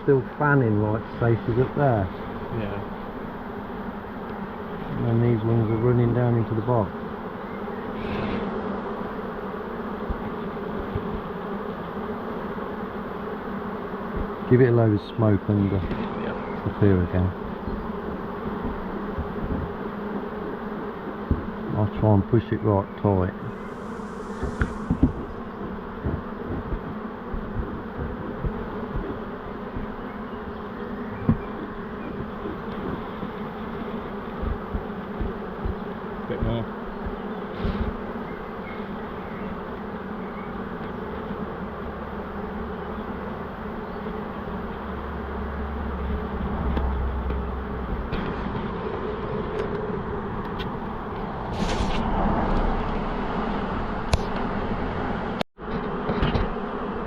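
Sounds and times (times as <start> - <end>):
bee swarm buzzing: 0.0 - 57.0
low thumps: 23.4 - 30.0.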